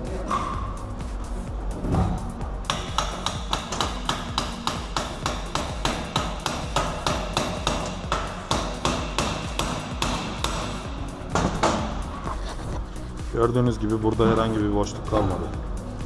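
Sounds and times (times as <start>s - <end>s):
hammer strikes on metal: 2.6s - 12.1s.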